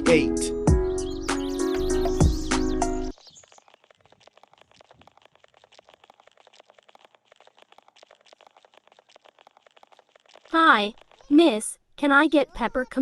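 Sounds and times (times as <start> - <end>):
faint rapid clicking: 3.1 - 11.6.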